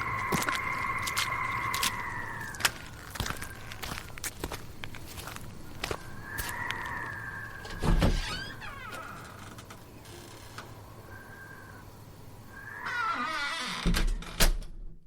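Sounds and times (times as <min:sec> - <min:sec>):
creaking door hinge: 0:07.6 - 0:10.8, 0:12.8 - 0:14.6.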